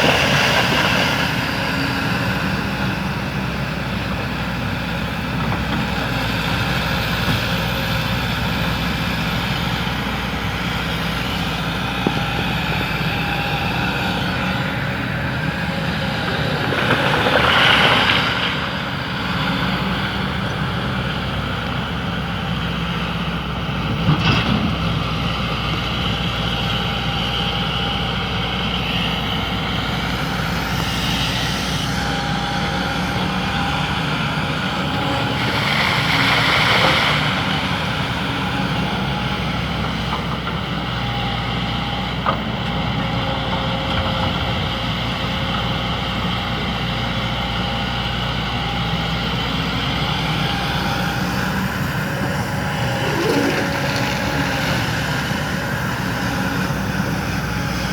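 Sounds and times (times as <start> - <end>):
excavator diesel engine running: 0.0 - 57.9
hissing surge: 52.7 - 54.8.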